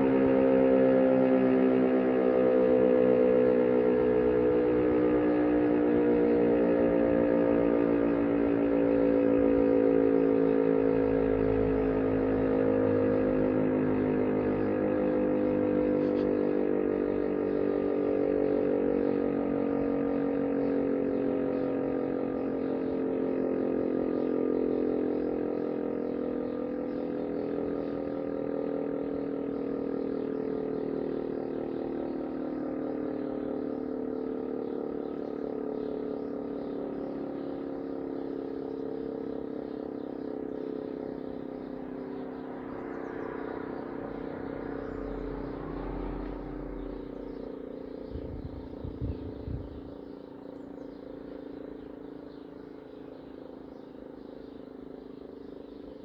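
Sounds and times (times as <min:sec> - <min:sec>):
multi-toned motor siren: 0:00.0 - 0:56.0
low rumble with thumps: 0:42.5 - 0:51.3.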